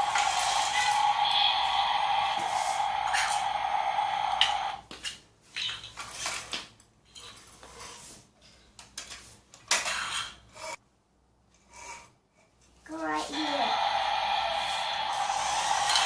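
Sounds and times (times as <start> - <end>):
steady tone: 0.0 - 4.8.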